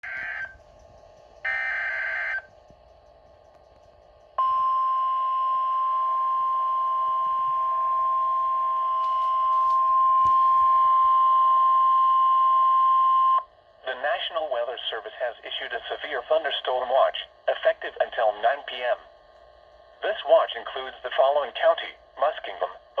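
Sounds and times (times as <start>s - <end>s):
steady alarm tone: 0.0s - 13.5s.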